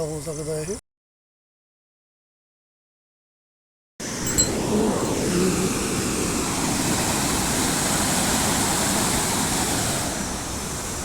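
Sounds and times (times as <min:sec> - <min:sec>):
floodwater rushing: 0:04.0 - 0:11.0.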